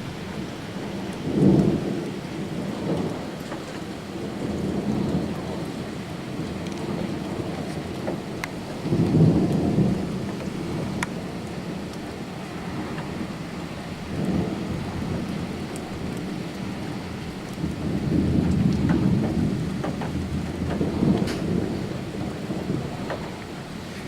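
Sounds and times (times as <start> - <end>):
steady rain: 0.0 - 24.0
thunder rumbling: 0.0 - 24.0.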